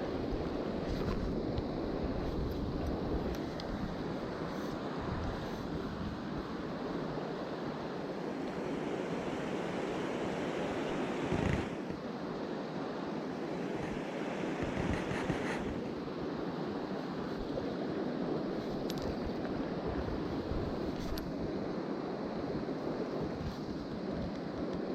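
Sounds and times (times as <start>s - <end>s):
mountain stream water rushing: 6.6s - 15.5s.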